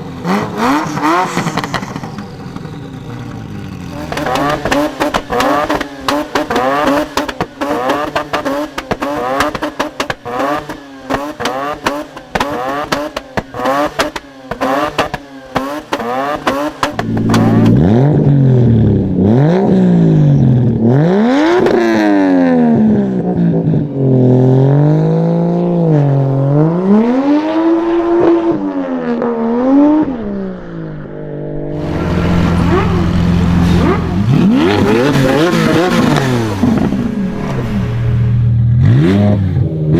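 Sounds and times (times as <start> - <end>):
car engine idling: 0.0 - 10.4, 11.0 - 20.8, 30.4 - 39.1
car engine revving: 0.0 - 39.9
exhaust pops and crackles: 1.3 - 17.8.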